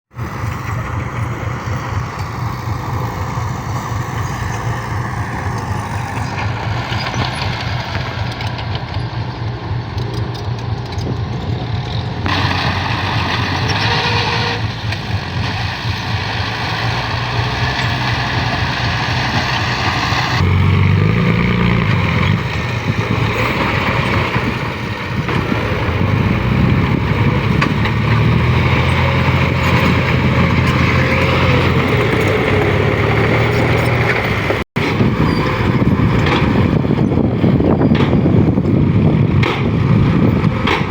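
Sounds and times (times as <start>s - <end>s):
diesel truck engine revving: 0.1s - 40.9s.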